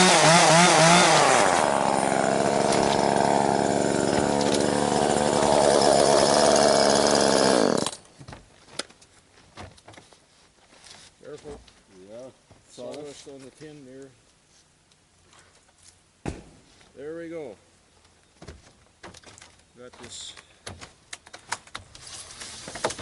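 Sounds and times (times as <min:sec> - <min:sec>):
chainsaw revving: 0:00.0 - 0:08.0.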